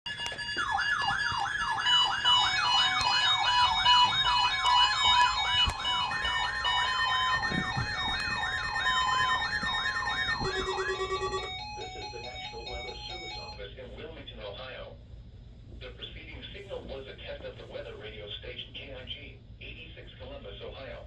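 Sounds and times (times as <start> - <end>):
steady alarm tone: 0.0 - 13.6
beeping tones: 0.1 - 13.6
siren sweeping up and down: 0.1 - 13.6
steady higher tone: 0.1 - 13.6.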